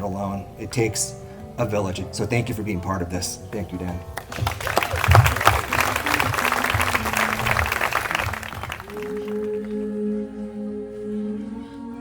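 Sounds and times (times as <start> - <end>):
soft music with held notes: 0.0 - 4.8, 9.5 - 12.0
audience clapping: 4.2 - 9.8.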